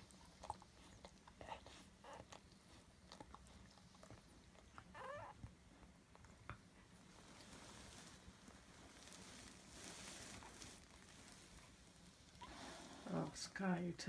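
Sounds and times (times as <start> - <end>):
dog licking puppies: 0.0 - 7.5.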